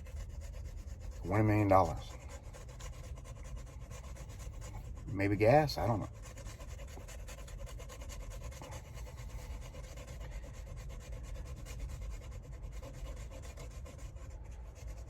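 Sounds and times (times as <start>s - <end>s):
steady low hum: 0.0s - 15.0s
lottery ticket scratching: 1.2s - 2.5s, 4.5s - 6.1s.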